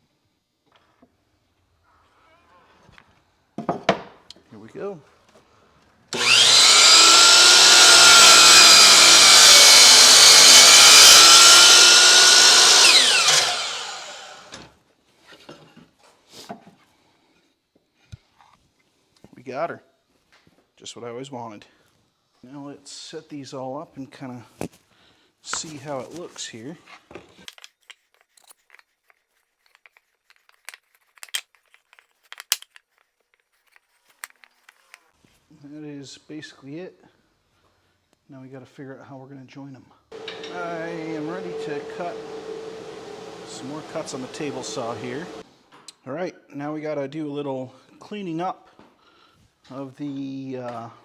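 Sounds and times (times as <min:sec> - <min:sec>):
saw blade spinning down: 0:06.1 - 0:14.7, 0:40.2 - 0:45.4
table saw cutting wood: 0:06.1 - 0:14.7, 0:40.1 - 0:45.4.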